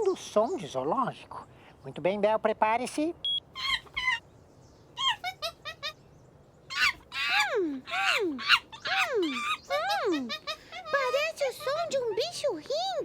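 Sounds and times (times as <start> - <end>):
monkey chattering: 3.5 - 4.2, 5.0 - 6.0, 6.7 - 12.6
monkey whooping cries: 3.5 - 4.2, 5.0 - 6.0, 6.7 - 12.3.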